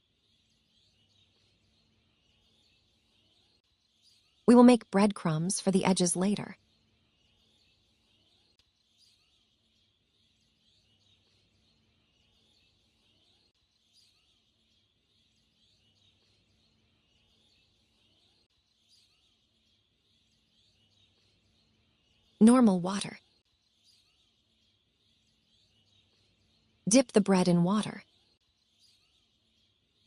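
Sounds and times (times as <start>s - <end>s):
faint bird chirps: 7.2s - 30.0s.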